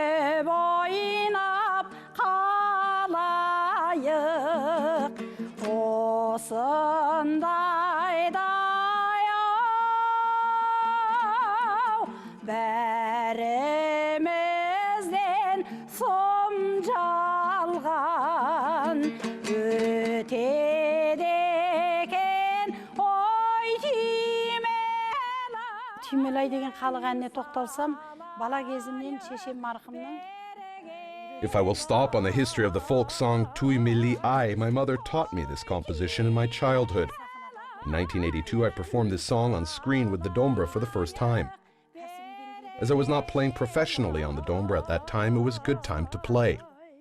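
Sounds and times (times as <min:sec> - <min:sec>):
person singing folk song: 0:00.0 - 0:47.0
singer breathing: 0:01.8 - 0:02.2, 0:05.2 - 0:05.6, 0:12.0 - 0:12.5, 0:15.6 - 0:15.9, 0:19.0 - 0:19.5, 0:22.7 - 0:23.0, 0:28.0 - 0:28.4, 0:41.6 - 0:42.0.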